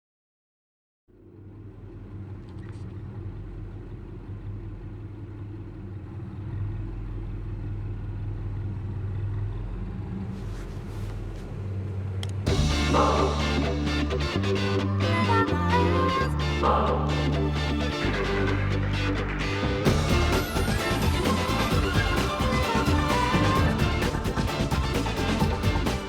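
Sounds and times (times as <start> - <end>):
low rumbling drone: 1.1 - 26.0
band music: 12.5 - 26.0.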